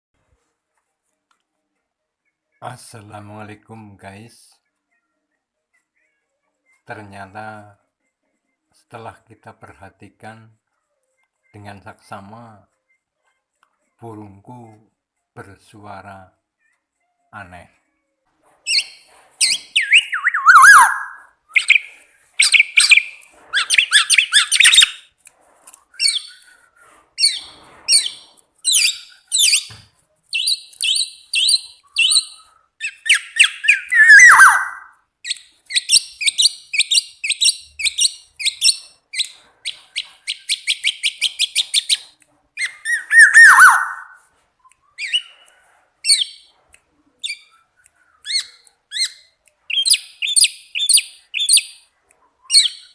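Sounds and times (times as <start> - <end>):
bird call sliding down: 18.7 - 25.0, 33.1 - 34.9, 42.7 - 44.2
songbird chirping and trilling: 18.7 - 25.2, 26.0 - 26.6, 27.2 - 46.6, 47.2 - 52.9.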